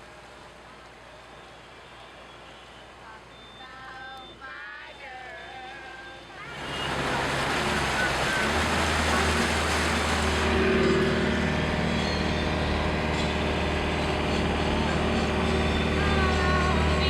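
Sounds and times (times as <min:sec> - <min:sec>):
low engine hum: 0:00.0 - 0:17.0
water rushing against vehicle: 0:05.1 - 0:11.6.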